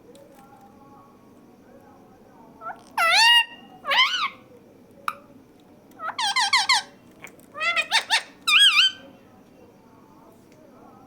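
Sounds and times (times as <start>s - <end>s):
parrot squeaky calls: 2.6s - 4.4s, 6.0s - 6.9s, 7.6s - 9.0s.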